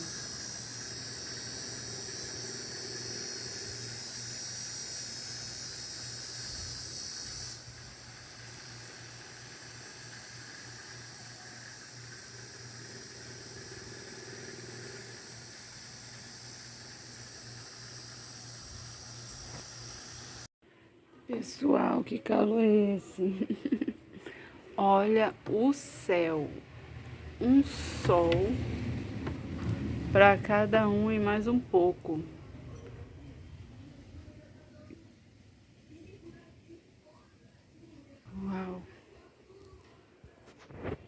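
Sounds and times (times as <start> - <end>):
low steady hum: 23.2 - 36.5.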